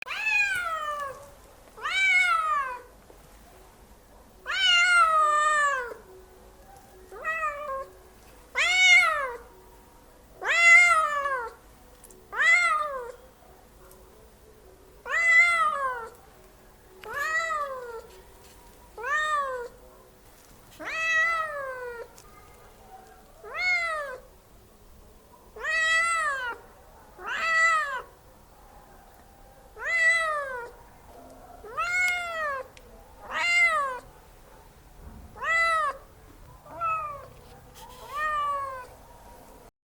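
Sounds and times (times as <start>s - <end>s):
cat meowing loudly: 0.1s - 1.2s, 1.8s - 2.9s, 4.5s - 6.0s, 7.1s - 8.0s, 8.6s - 9.4s, 10.4s - 11.6s, 12.3s - 13.2s, 15.1s - 16.2s, 17.1s - 18.1s, 19.0s - 19.8s, 20.8s - 22.1s, 23.4s - 24.2s, 25.6s - 26.6s, 27.2s - 28.1s, 29.8s - 30.7s, 31.6s - 34.1s, 35.4s - 37.3s, 37.9s - 38.9s.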